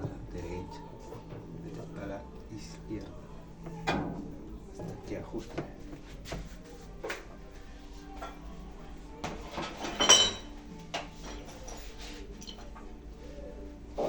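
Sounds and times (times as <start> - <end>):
metal tools knocking and clinking: 9.6 - 10.5.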